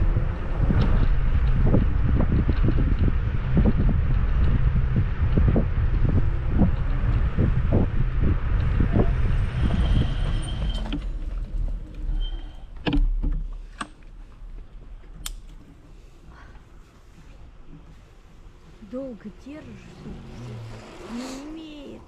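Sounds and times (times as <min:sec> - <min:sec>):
wind rumbling on microphone: 0:00.0 - 0:13.6
sharp clicks and rattles: 0:00.1 - 0:12.1.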